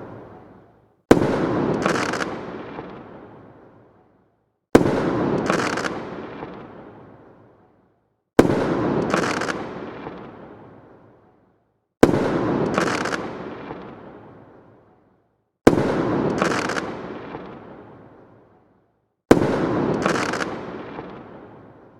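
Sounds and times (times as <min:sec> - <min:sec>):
crackling firework sparkle: 0:01.2 - 0:03.4, 0:05.0 - 0:07.1, 0:08.6 - 0:10.5, 0:12.3 - 0:14.1, 0:15.9 - 0:17.9, 0:19.5 - 0:21.9.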